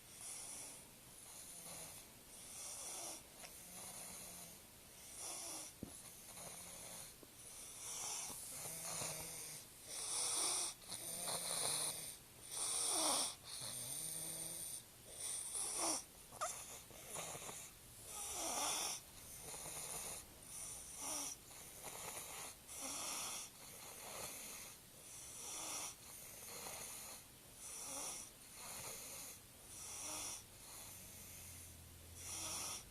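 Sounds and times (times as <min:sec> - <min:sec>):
boy snoring: 0:00.1 - 0:32.9.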